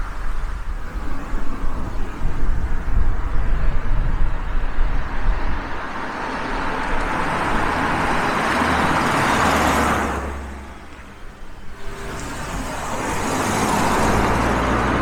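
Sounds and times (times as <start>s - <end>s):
car driving past: 5.8s - 15.0s.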